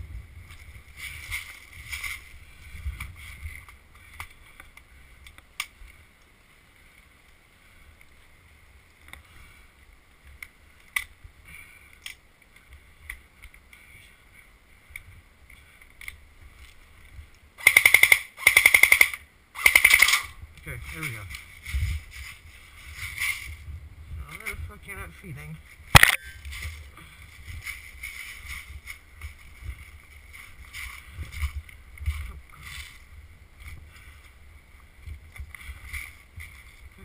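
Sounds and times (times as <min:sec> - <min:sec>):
airsoft gun full-auto bursts: 0:17.6 - 0:20.3.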